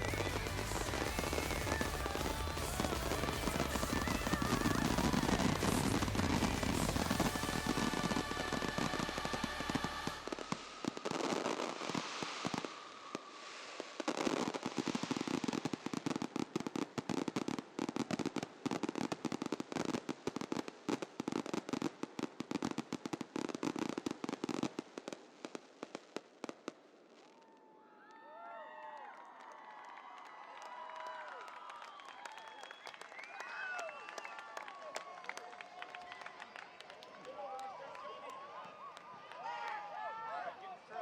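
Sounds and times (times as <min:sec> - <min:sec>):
fireworks bangs and crackles: 0:00.0 - 0:27.7.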